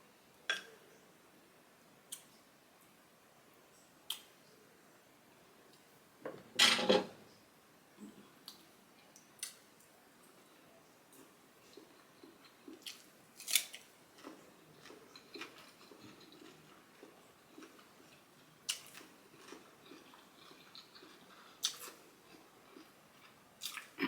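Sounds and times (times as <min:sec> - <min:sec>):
soft chewing: 0:08.0 - 0:24.0.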